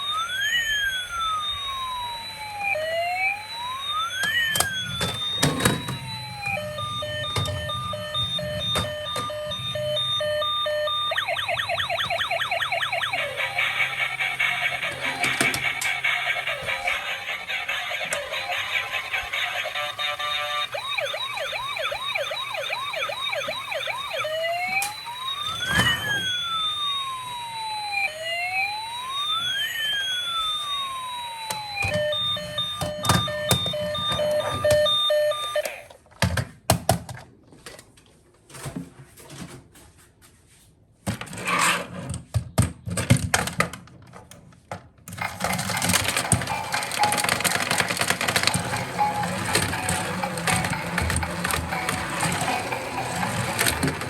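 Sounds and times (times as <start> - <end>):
steady electronic beeps: 0.0 - 28.4, 30.1 - 35.8
electronic toy siren: 0.0 - 36.0, 45.2 - 54.0
toy parts clicking and knocking: 4.2 - 10.4, 14.2 - 25.9, 31.4 - 37.3, 42.4 - 54.0.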